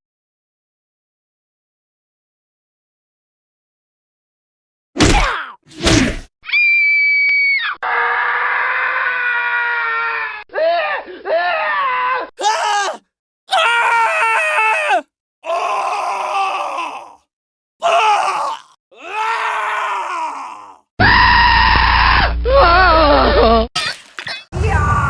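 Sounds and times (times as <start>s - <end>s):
person screaming: 7.8s - 23.7s.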